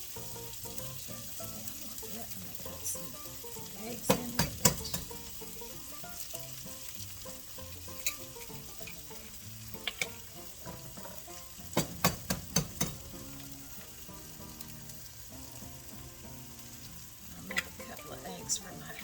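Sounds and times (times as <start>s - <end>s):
meat sizzling in a pan: 0.0s - 19.0s
sharp knocks: 11.8s - 13.0s.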